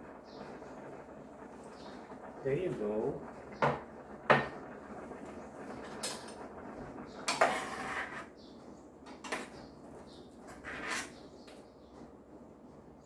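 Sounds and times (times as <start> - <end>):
metal utensils scraping cookware: 7.3 - 8.3, 10.5 - 11.3.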